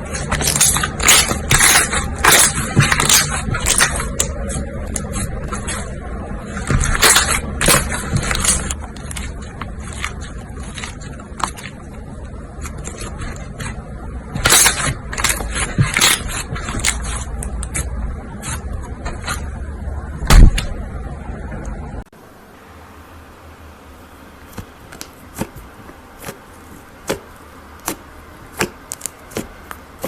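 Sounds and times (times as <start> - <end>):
slime squishing and popping: 0.0 - 5.9, 6.5 - 11.8, 12.8 - 17.8.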